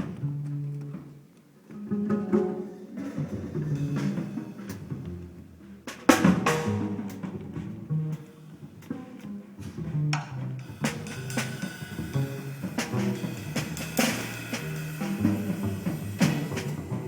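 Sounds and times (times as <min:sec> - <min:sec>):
double bass notes: 0:01.8 - 0:17.0
drum kit hits: 0:10.6 - 0:17.0
cymbal crash: 0:10.7 - 0:17.0.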